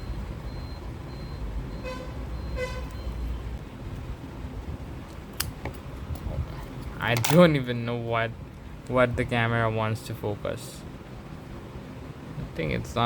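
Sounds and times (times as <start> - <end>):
vehicle horn toots: 1.8 - 2.9
sharp click: 7.1 - 7.5.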